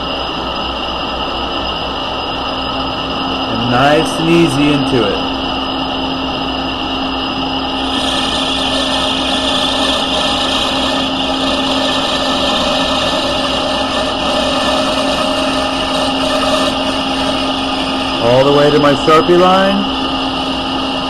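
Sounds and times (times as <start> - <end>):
lathe motor humming: 0.0 - 21.0
high hiss of cutting tool: 7.8 - 17.4.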